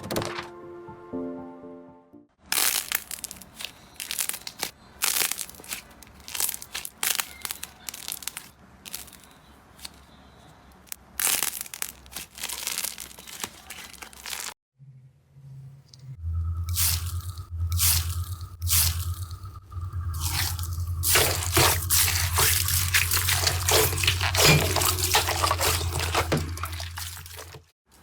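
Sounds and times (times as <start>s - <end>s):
slime squeezed by hand crackling: 2.5s - 10.0s, 10.8s - 14.6s.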